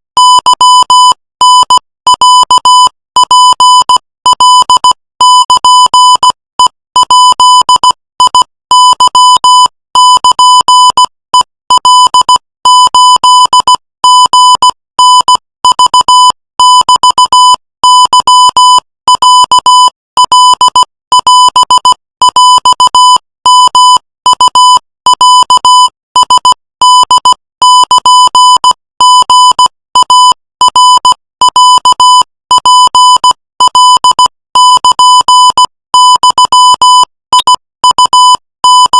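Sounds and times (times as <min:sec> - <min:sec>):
morse code beeping tone: 0:00.2 - 0:38.9.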